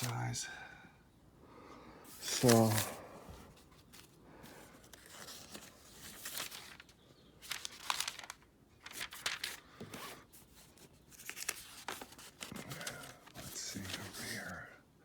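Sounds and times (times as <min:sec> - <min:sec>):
material rustling and crinkling: 0:02.1 - 0:04.2, 0:04.9 - 0:14.4.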